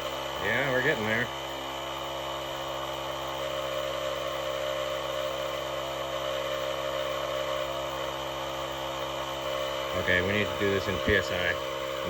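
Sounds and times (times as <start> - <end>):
air compressor running: 0.0 - 12.0.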